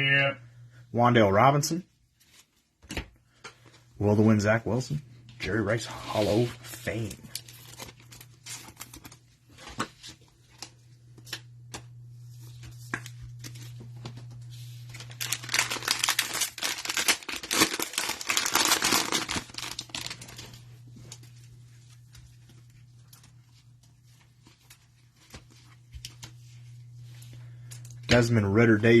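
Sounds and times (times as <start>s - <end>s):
wrapper tearing and crinkling: 7.0s - 9.2s, 14.8s - 21.3s.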